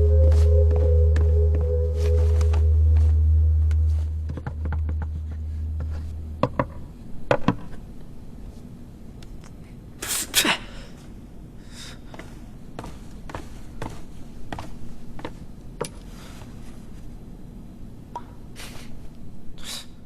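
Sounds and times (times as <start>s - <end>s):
low musical drone: 0.0s - 6.1s.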